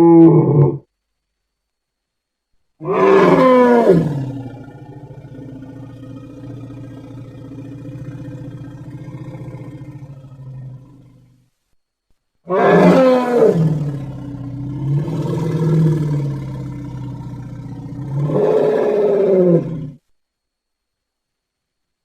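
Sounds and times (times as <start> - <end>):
elephant roaring: 2.8 - 11.3, 12.5 - 20.0.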